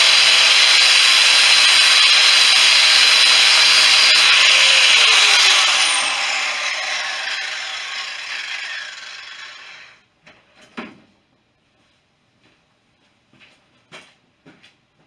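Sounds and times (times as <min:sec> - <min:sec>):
power tool winding down: 0:00.0 - 0:10.0.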